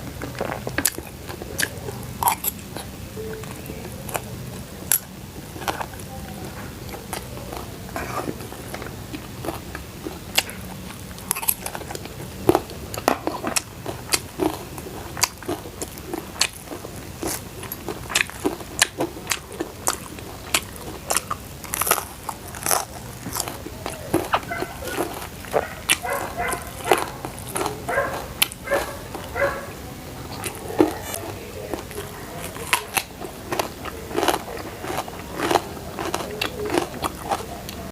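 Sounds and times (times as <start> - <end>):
crunchy food being chewed: 0.0 - 37.9.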